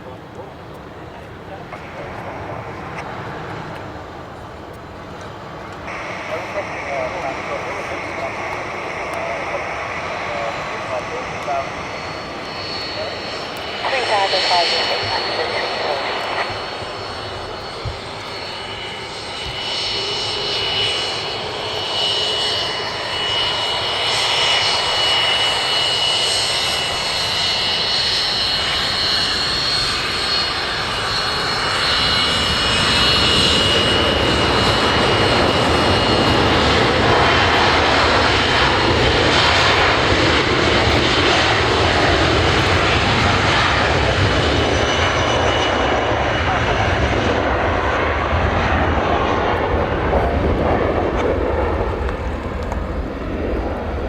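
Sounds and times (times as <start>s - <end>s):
aircraft engine running: 0.0s - 54.0s.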